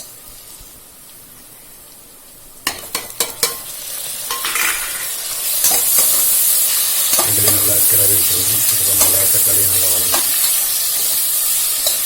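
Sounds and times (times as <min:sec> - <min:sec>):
food sizzling in oil: 0:00.0 - 0:12.0.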